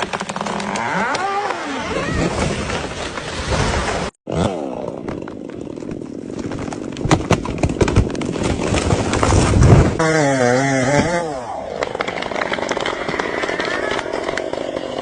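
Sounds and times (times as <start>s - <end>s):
sharp cracks and knocks: 0.0s - 1.7s, 4.8s - 10.0s, 10.9s - 15.0s
chainsaw engine running: 4.3s - 6.9s, 10.0s - 15.0s.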